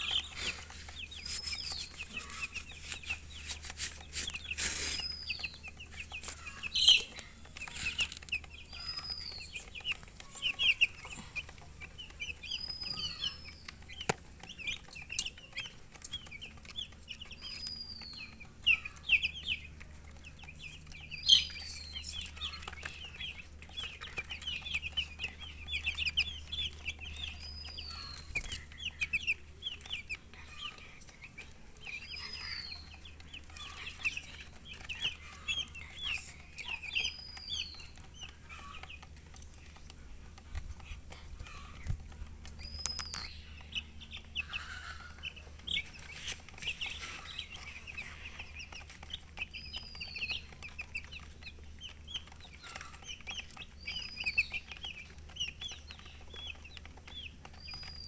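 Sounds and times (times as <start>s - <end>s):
chicks chirping: 0.0s - 58.0s
hen clucking: 0.0s - 58.0s.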